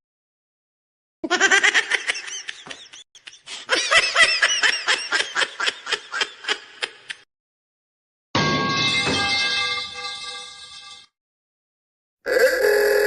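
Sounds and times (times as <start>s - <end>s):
person laughing: 1.2s - 7.2s.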